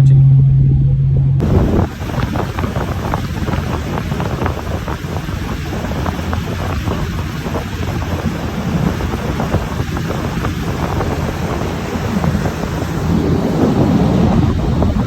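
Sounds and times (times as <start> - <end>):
wind buffeting microphone: 1.4 - 15.0.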